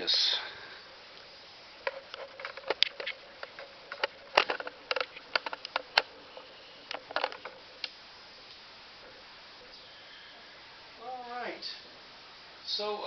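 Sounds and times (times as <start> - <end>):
sharp clicks and light knocks: 1.2 - 9.2.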